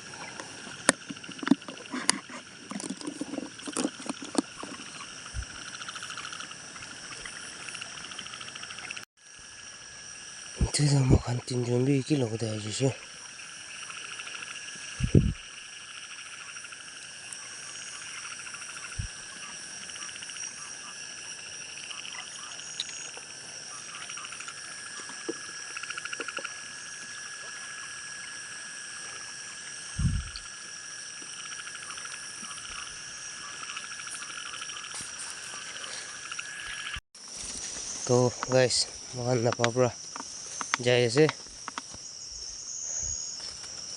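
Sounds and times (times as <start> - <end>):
frogs and insects calling: 0.0 - 43.9
low thumps: 15.0 - 15.4.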